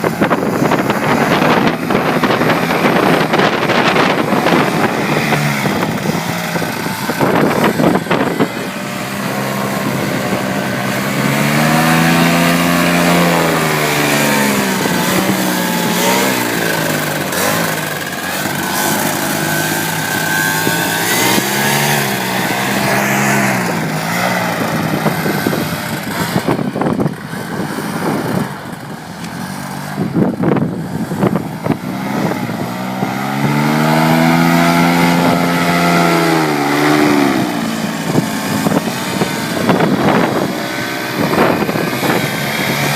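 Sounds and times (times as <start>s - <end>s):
paramotor engine and propeller: 0.0s - 42.9s
wind buffeting microphone: 0.0s - 42.9s.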